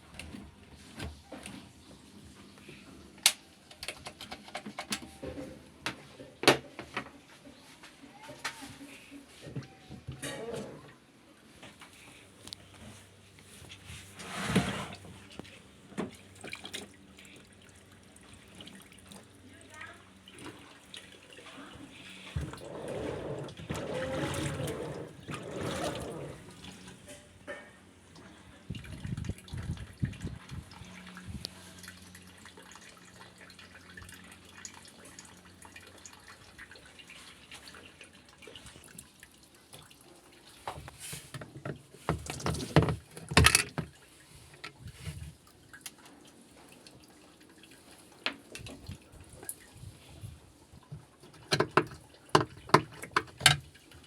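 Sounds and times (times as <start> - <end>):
water splashing and dripping: 16.0 - 22.6, 28.1 - 43.2, 43.8 - 54.0.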